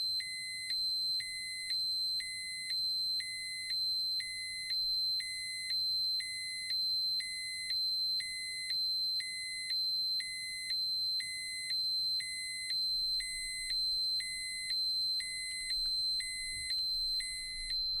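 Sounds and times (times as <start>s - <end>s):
steady high electronic alarm tone: 11.3s - 18.0s
low pulsing beep: 12.2s - 18.0s.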